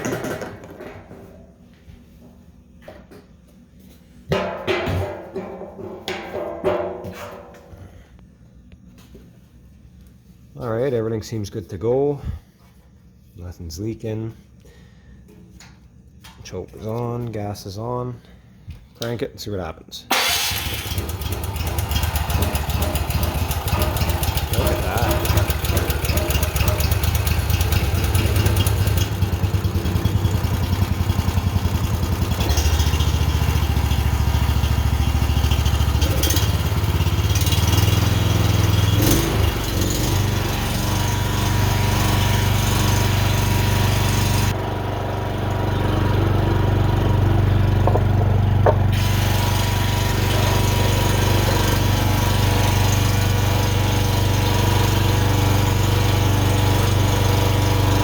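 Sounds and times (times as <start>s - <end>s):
generator engine running: 20.1s - 58.0s.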